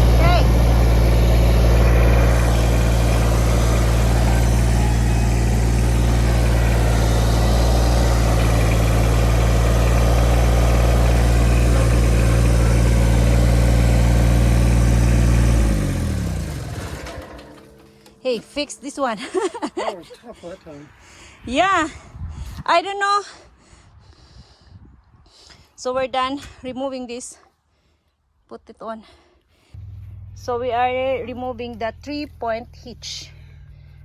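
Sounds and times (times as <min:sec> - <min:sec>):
tractor diesel engine running down: 0:00.0 - 0:20.6, 0:29.8 - 0:34.0.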